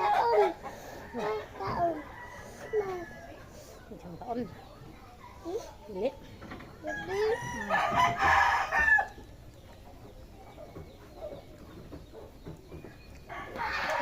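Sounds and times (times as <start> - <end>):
rooster crowing: 1.1 - 3.5, 6.8 - 9.2, 13.3 - 14.0.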